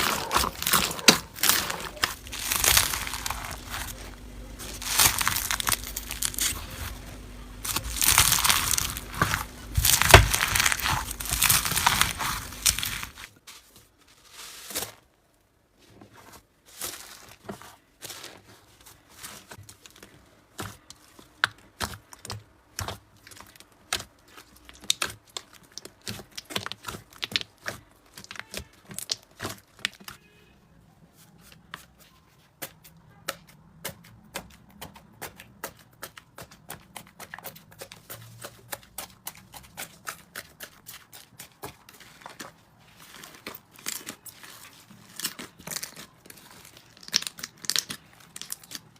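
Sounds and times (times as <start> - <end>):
slime crunching and popping: 0.0 - 13.3, 19.7 - 30.2, 33.8 - 48.9.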